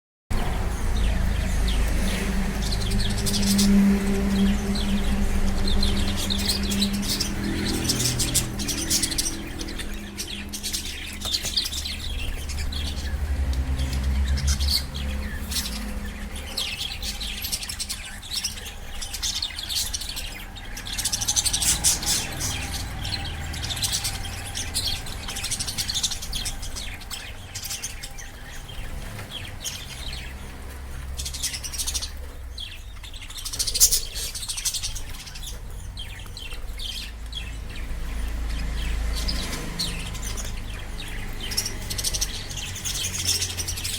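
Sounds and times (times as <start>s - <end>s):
low rumble: 0.3s - 19.6s
lovebirds chirping: 0.3s - 43.9s.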